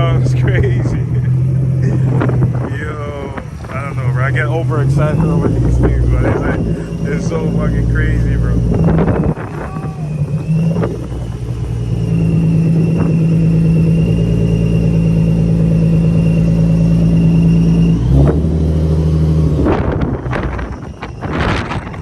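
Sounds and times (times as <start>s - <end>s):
car engine running: 0.0s - 22.0s
faint high whine: 2.6s - 18.0s.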